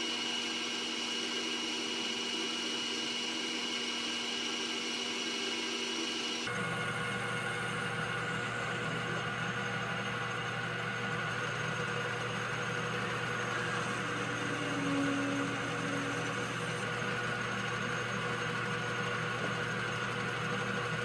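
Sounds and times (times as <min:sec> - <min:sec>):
metal lathe motor hum: 0:00.0 - 0:21.0
short tone: 0:13.8 - 0:16.7.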